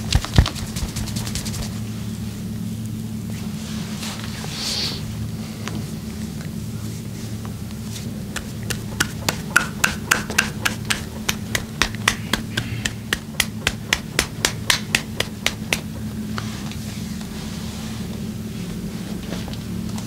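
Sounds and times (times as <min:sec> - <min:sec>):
hands slapping skin in massage: 0:00.0 - 0:01.8, 0:08.3 - 0:16.0.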